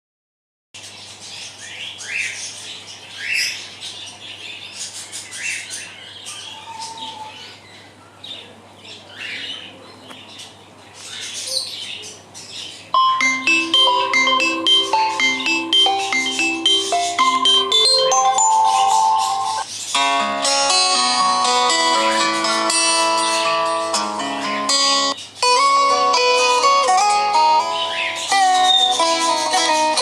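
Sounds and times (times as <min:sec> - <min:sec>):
bird chirps ringtone: 0:12.9 - 0:30.0
bell-like ringtone melody: 0:13.0 - 0:27.8.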